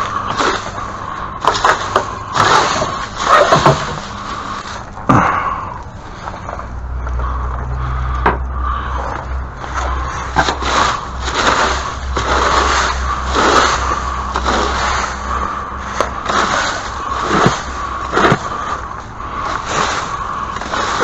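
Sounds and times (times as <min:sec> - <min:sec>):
scraping and clattering: 0:01.4 - 0:04.9.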